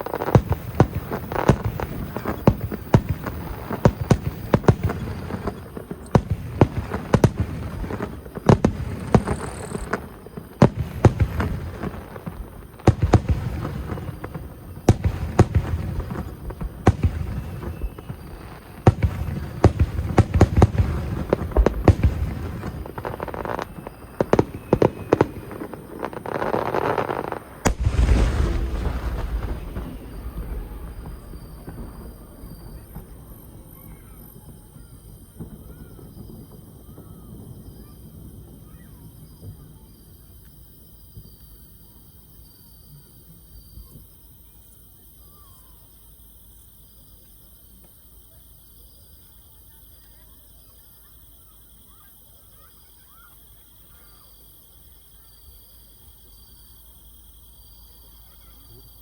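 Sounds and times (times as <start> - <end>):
deep firework boom: 0.0 - 38.7
fireworks bangs and crackling: 0.0 - 42.7.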